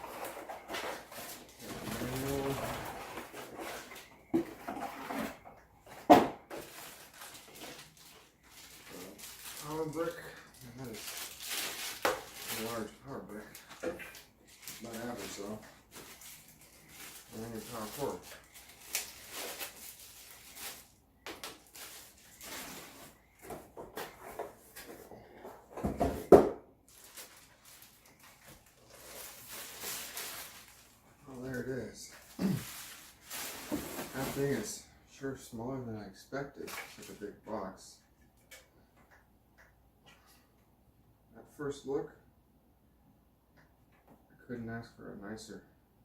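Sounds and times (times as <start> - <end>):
packaging rustling: 0.0 - 25.0, 26.9 - 34.7.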